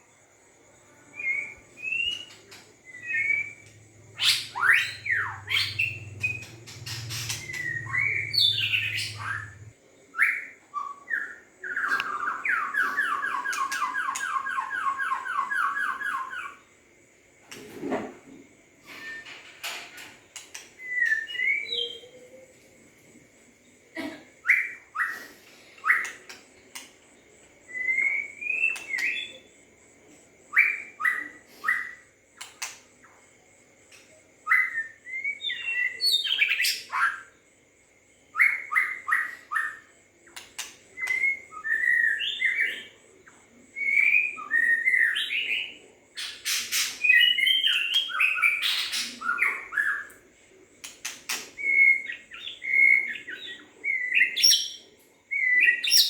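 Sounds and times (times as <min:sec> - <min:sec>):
bird singing whistled phrases: 0:01.1 - 0:16.6, 0:20.8 - 0:22.4, 0:27.7 - 0:29.4, 0:41.0 - 0:42.9.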